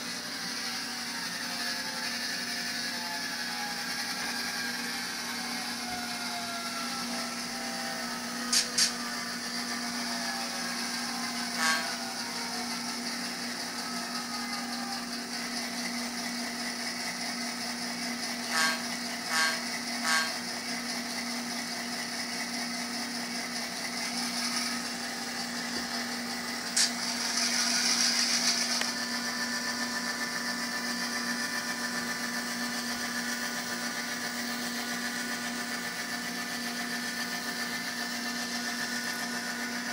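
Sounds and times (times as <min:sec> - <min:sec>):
diesel engine sound from tiny speaker: 0:00.0 - 0:39.9
model motor and gears: 0:03.7 - 0:39.9
horn blasts: 0:11.5 - 0:12.1, 0:18.4 - 0:20.4.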